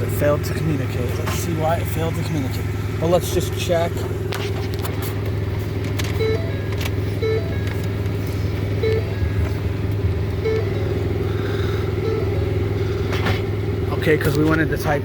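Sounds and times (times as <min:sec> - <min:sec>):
low vehicle hum: 0:00.0 - 0:15.0
soft warning chime: 0:06.2 - 0:07.8, 0:08.4 - 0:09.7, 0:10.3 - 0:13.0.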